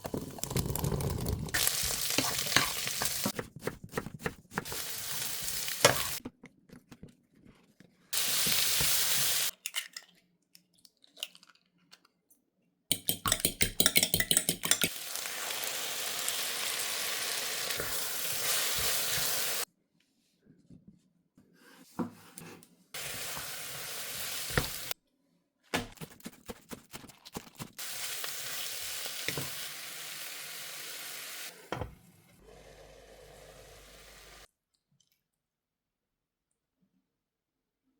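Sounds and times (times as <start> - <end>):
food sizzling in a pan: 1.5 - 3.3, 4.6 - 6.2, 8.2 - 9.5, 14.9 - 19.6, 23.0 - 25.0, 27.8 - 31.6, 32.6 - 34.5
utensil clicking and knocking: 12.9 - 14.9.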